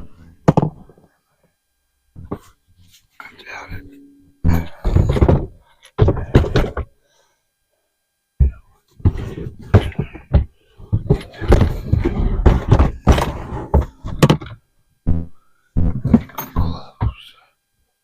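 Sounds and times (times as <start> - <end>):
metal toolboxes thudding and clunking: 4.6 - 6.9, 10.9 - 14.5, 16.0 - 16.7.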